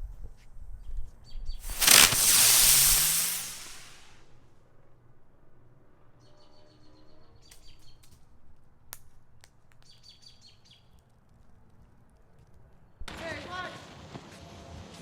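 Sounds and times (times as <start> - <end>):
sharp clicks: 1.6 - 4.1.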